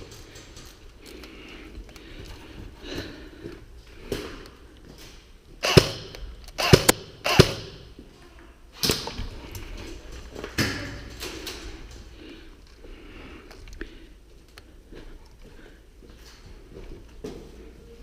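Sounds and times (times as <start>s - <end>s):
airsoft gun shots: 5.6s - 7.9s.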